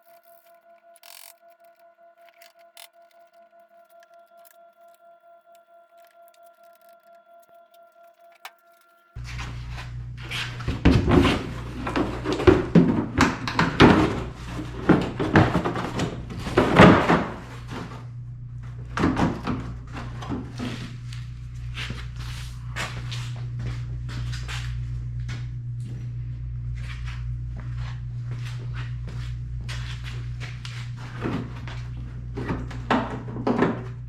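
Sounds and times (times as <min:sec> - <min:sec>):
metal parts and tools clunking: 0:00.0 - 0:05.0
steady low hum: 0:00.0 - 0:34.0.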